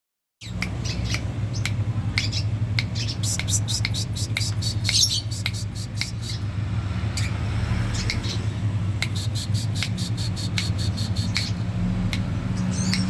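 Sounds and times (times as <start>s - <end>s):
songbird chirping: 0.4s - 13.0s
steady low hum: 0.4s - 13.0s.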